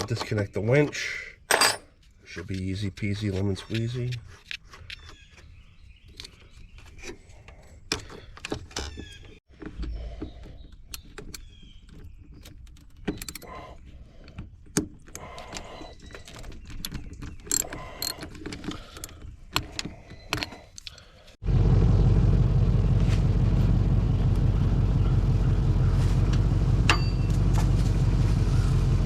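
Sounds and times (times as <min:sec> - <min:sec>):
hand tools clinking against metal: 0:01.5 - 0:02.0, 0:17.4 - 0:21.1.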